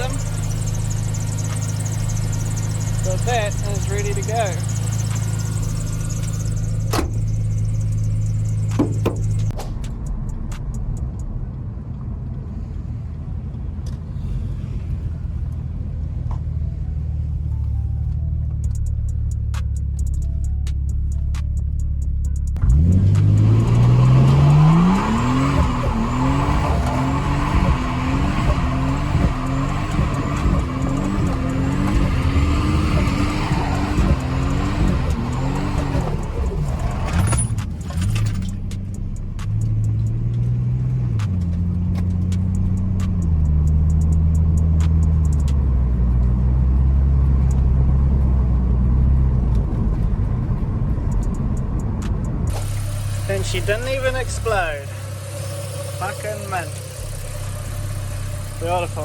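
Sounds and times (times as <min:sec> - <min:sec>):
car engine revving: 0:00.0 - 0:11.5, 0:12.6 - 0:59.0
sharp clicks: 0:41.1 - 0:45.8, 0:51.0 - 0:52.6.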